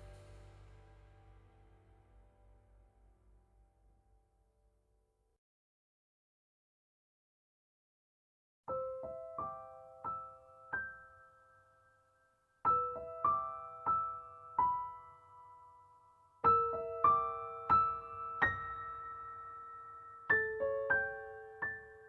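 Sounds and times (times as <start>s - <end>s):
gentle slow piano music: 0.0s - 4.3s, 8.7s - 22.0s.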